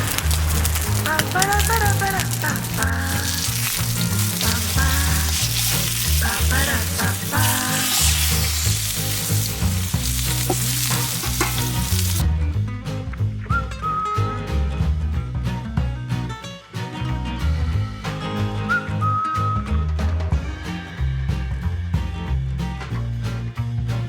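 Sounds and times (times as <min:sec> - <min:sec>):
food sizzling in hot fat: 0:00.0 - 0:12.2
background music with bass line: 0:00.0 - 0:24.0.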